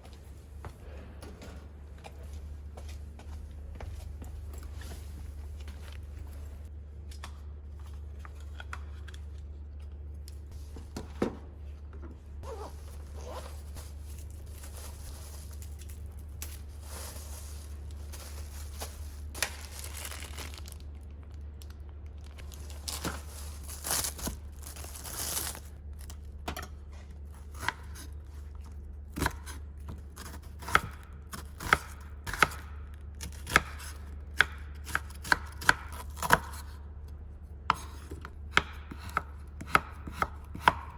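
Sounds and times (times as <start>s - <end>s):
steady low hum: 0.0s - 40.9s
tearing and crinkling: 12.4s - 26.3s
knife chopping on cutting board: 37.7s - 40.9s.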